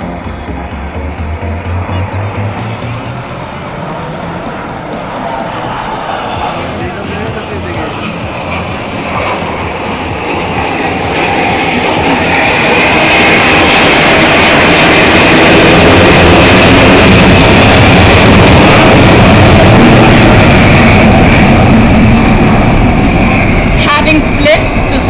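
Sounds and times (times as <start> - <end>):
jet fighter flying past: 0.0 - 25.0.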